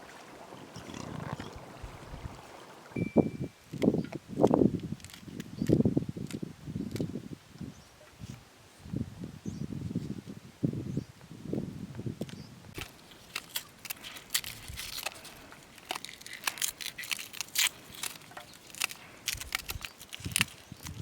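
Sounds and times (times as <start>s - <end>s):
sharp crackles and crunches: 0.7s - 1.5s, 3.7s - 7.1s, 12.7s - 21.0s.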